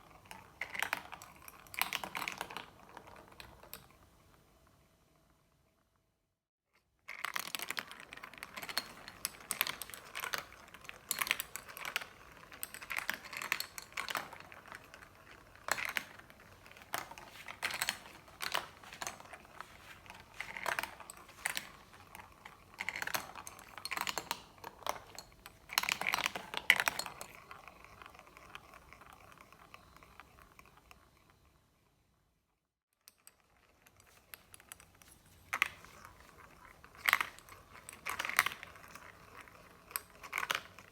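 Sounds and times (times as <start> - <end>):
marbles clattering down a track: 7.1 - 31.0.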